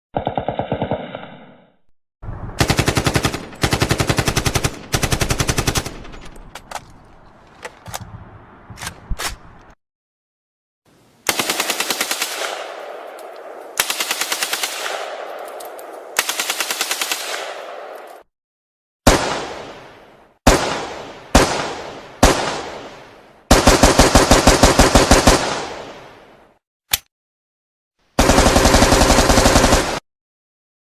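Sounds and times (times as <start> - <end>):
rifle single shots echoing: 11.3 - 18.0, 20.5 - 23.1
isolated sharp gunshots: 13.8 - 15.4, 19.0 - 26.0
automatic rifle fire: 20.5 - 22.8
automatic gunfire burst: 23.5 - 25.7, 28.2 - 30.0.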